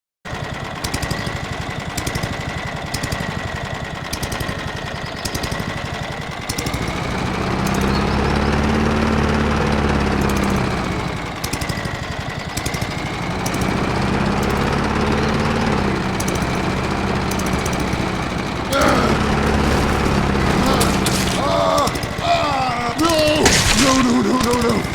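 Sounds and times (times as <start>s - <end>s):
lawn mower engine running: 0.3s - 24.9s
person speaking: 20.6s - 24.9s.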